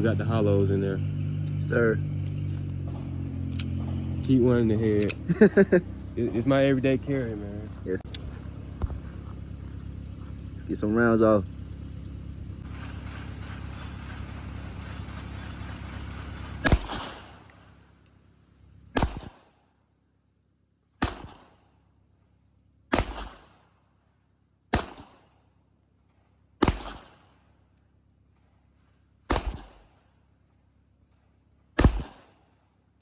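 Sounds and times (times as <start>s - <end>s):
steady low hum: 0.0s - 19.3s
pistol shots with echo: 16.6s - 17.5s, 19.0s - 19.5s, 21.0s - 21.6s, 22.9s - 23.7s, 24.7s - 25.3s, 26.6s - 27.4s, 29.3s - 30.0s, 31.8s - 32.5s.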